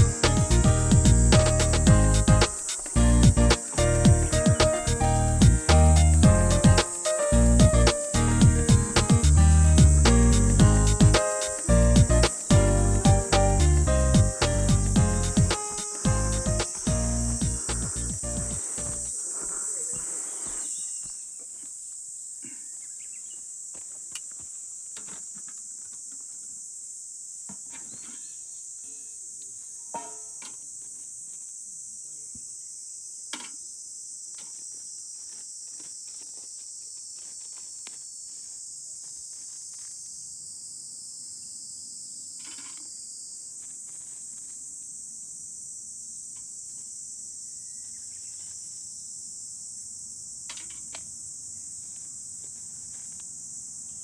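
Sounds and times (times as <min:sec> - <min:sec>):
insects shrilling: 0:00.0 - 0:54.0.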